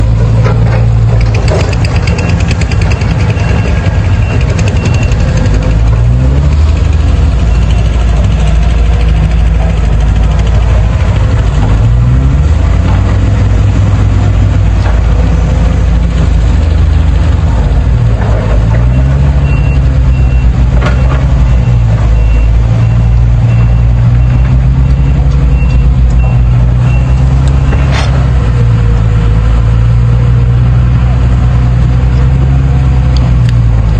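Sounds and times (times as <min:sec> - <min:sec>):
excavator diesel engine revving: 0:00.0 - 0:33.9
high alarm beep: 0:02.0 - 0:05.5.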